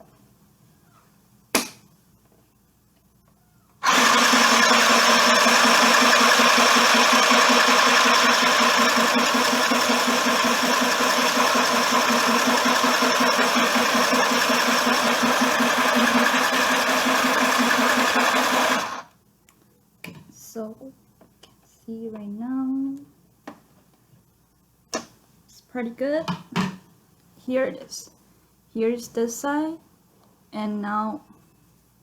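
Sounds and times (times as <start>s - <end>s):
sewing machine stitching: 3.8s - 19.1s.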